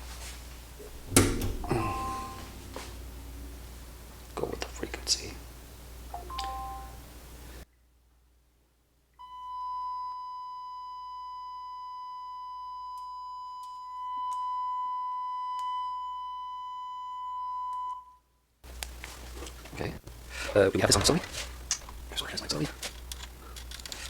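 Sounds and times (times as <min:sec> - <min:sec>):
steady test tone: 0:00.8 - 0:07.2.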